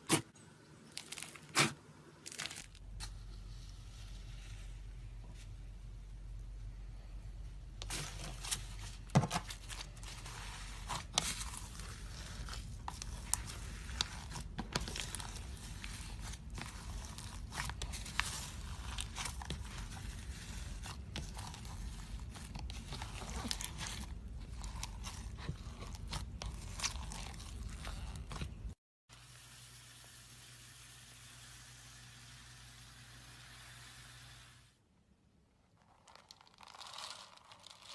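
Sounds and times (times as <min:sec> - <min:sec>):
steady low hum: 0:02.8 - 0:28.8.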